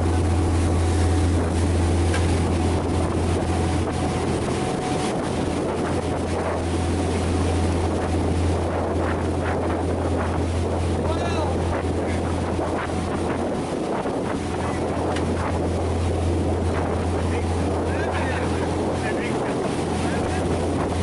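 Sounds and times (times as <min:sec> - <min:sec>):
boat engine low drone: 0:00.0 - 0:21.0
wind buffeting microphone: 0:00.0 - 0:21.0.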